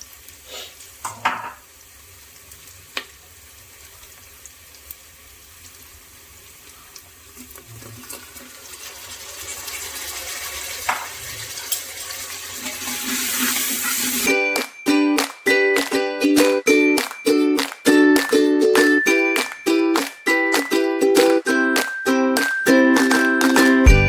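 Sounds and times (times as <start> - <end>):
water running or sizzling hiss: 0.0 - 23.1
ukulele music: 14.2 - 24.0.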